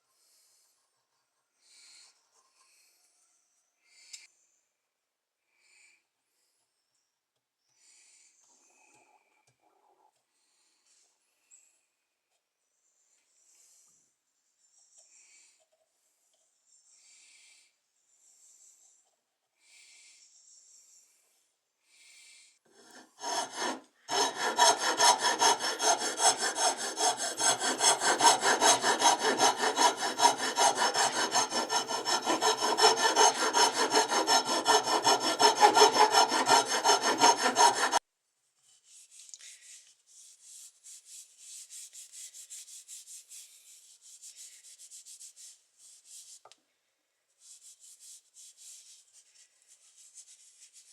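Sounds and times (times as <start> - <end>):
abrasive rubbing on a knife: 22.8 - 38.0.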